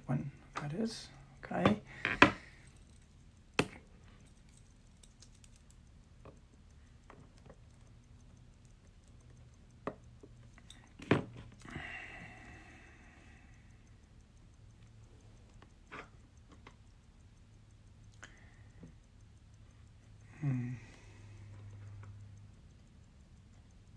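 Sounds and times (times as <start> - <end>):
watch tools clicking: 0.4 - 11.7, 12.4 - 23.9.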